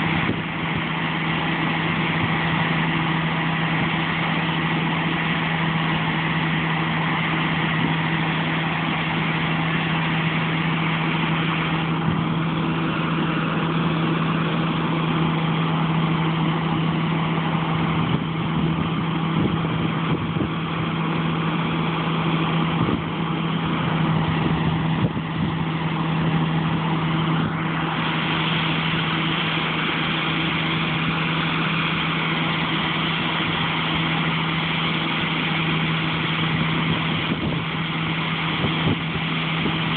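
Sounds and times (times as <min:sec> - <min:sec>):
diesel engine of harvest machinery: 0:00.0 - 0:39.9.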